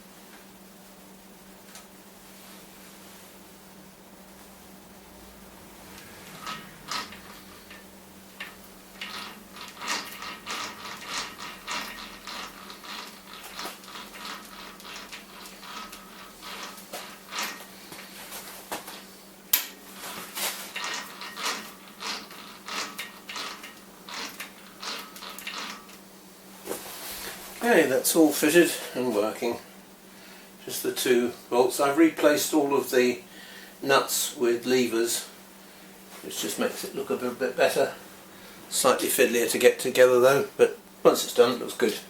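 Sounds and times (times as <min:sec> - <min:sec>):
faint steady hum: 0:00.0 - 0:42.0
metal clinks taps and scraping: 0:19.5 - 0:26.0.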